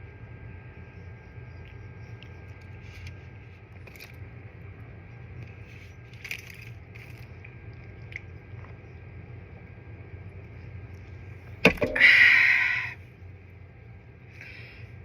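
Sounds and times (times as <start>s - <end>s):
low background hum: 0.0s - 15.0s.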